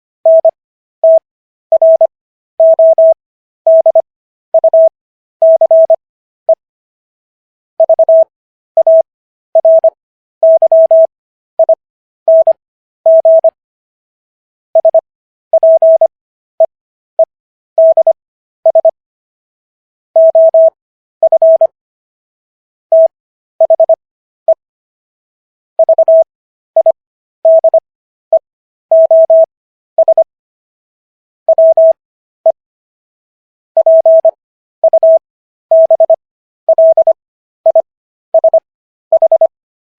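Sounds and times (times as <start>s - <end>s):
morse code beeps: 0.3s - 4.0s, 4.6s - 6.6s, 7.8s - 13.6s, 14.8s - 15.0s, 15.6s - 16.7s, 17.8s - 19.0s, 20.2s - 21.7s, 22.9s - 24.6s, 25.8s - 27.8s, 28.9s - 30.3s, 31.5s - 32.6s, 33.8s - 39.5s.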